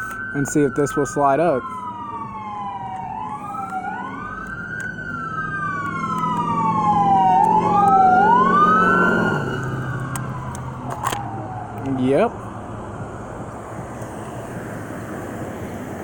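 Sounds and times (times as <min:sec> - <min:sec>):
emergency siren wailing: 0:00.0 - 0:13.7
low vehicle rumble: 0:01.6 - 0:16.0.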